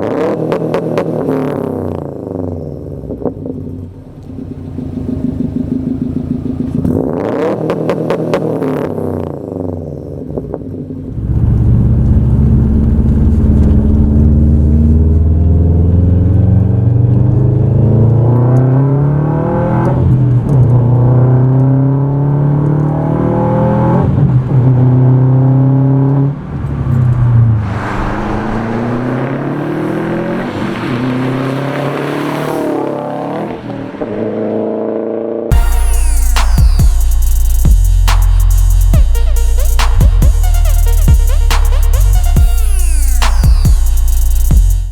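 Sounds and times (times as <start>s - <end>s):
car engine accelerating hard: 0.0s - 44.9s
exhaust cracks: 10.3s - 18.8s, 26.4s - 33.8s, 35.5s - 44.9s.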